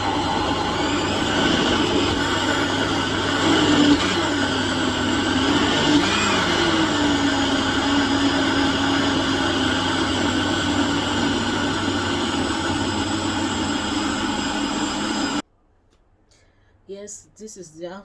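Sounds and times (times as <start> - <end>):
electric blender motor running: 0.0 - 15.4.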